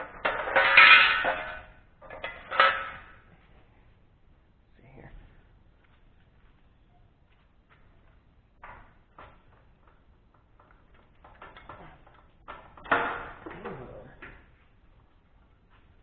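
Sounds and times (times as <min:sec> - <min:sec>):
metal clatter: 0:00.0 - 0:03.6, 0:08.6 - 0:16.0
clicks and knocks of tools: 0:08.6 - 0:13.6.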